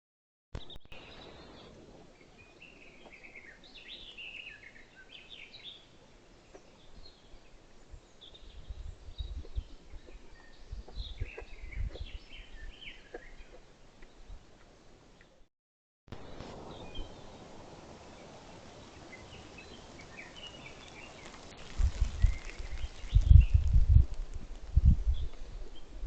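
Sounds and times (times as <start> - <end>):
birds singing and chirping: 0.6 - 14.5, 18.1 - 24.0.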